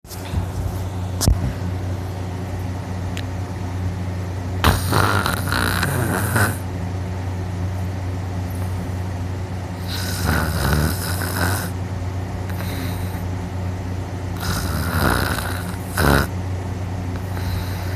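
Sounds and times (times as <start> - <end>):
steady low hum: 0.1 - 17.9
person snoring loudly: 4.6 - 6.7, 9.8 - 11.8, 14.4 - 16.4, 17.2 - 17.9.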